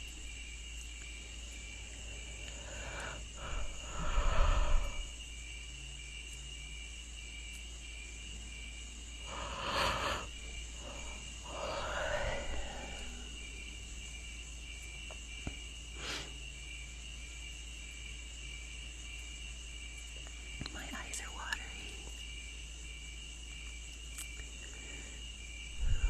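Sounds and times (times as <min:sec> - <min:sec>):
low hum: 0:00.0 - 0:06.4, 0:08.5 - 0:15.6, 0:25.0 - 0:26.0.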